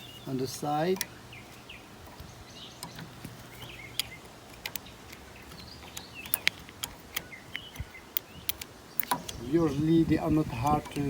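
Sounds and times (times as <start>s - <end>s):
birds chirping: 0.0s - 11.0s
tool clicking on metal: 2.1s - 9.7s, 10.6s - 11.0s.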